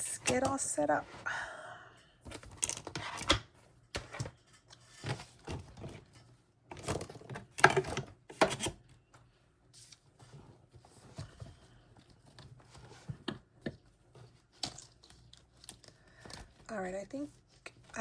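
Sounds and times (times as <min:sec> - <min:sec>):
paper rustling and crinkling: 0:14.0 - 0:18.0.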